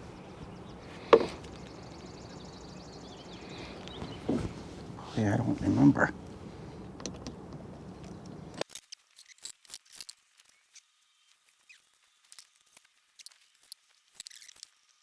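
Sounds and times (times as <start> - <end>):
light clicks and taps: 0.0 - 8.6
steady background noise: 0.0 - 8.6.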